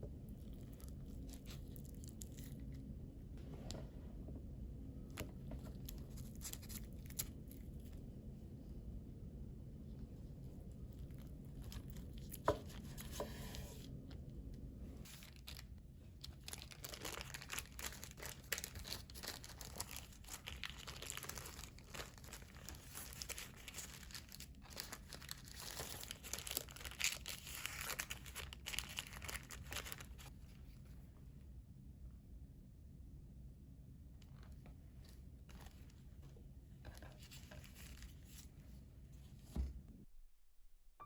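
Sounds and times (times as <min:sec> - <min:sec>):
wrapping crinkling: 0:05.7 - 0:08.0, 0:15.0 - 0:30.3, 0:34.3 - 0:38.5.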